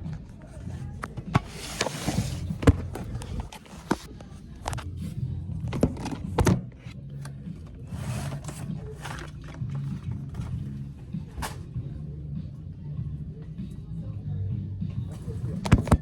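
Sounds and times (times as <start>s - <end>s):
clicks and knocks of handling: 0.0s - 4.9s, 5.6s - 11.7s, 15.1s - 16.0s
low hum of store background: 0.0s - 16.0s.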